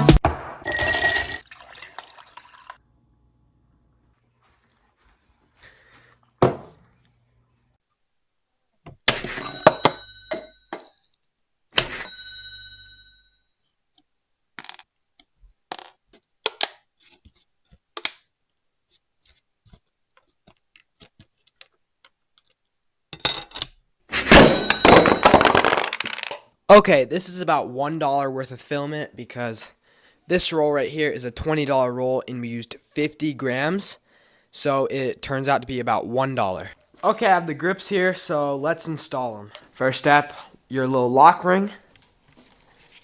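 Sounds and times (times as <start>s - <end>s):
hard objects clicking and knocking: 24.6s - 26.5s.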